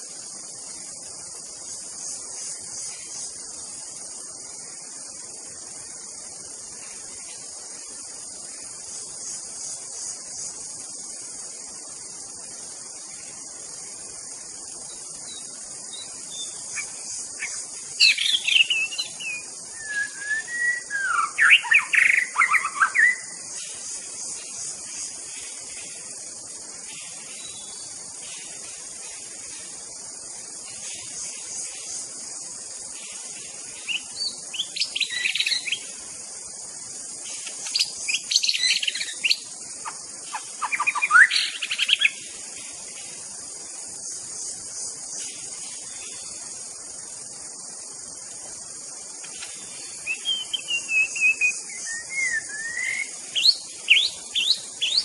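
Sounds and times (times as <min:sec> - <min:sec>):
high insect drone: 0:00.0 - 0:55.0
bird singing whistles and trills: 0:14.9 - 0:23.4, 0:33.8 - 0:35.9, 0:37.6 - 0:42.2, 0:49.9 - 0:55.0.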